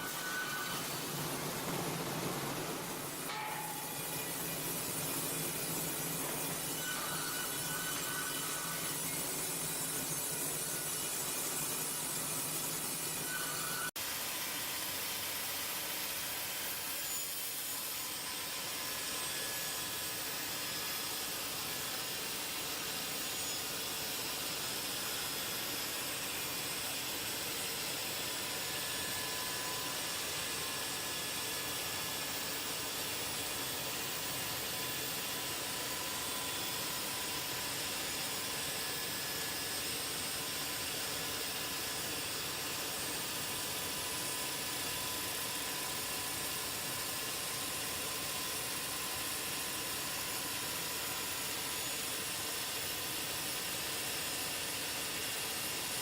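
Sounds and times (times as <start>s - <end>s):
hissing machinery noise: 0.0s - 13.9s.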